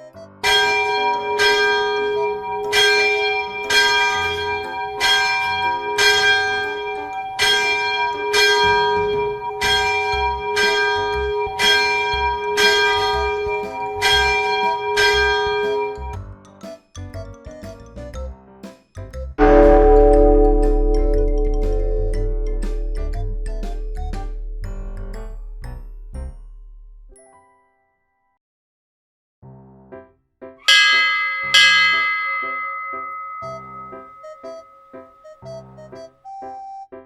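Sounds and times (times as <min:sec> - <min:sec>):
bell ringing: 0:00.0 - 0:16.2, 0:19.4 - 0:26.7, 0:30.7 - 0:35.8.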